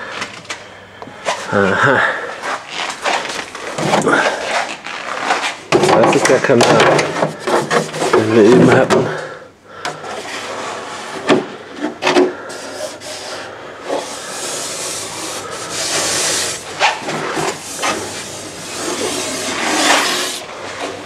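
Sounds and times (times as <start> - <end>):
rubbing scraping hiss: 12.4 - 20.9.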